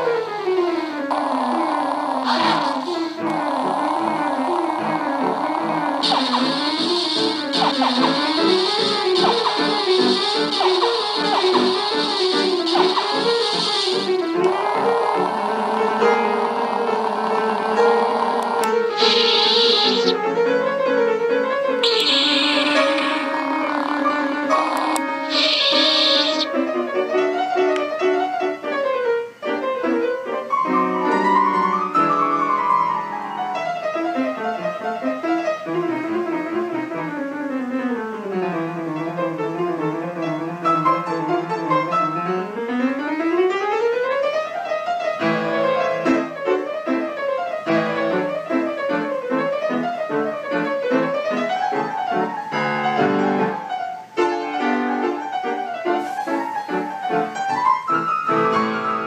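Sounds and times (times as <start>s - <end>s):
keyboard melody of wavering tones: 1.1s - 20.4s, 21.8s - 26.6s.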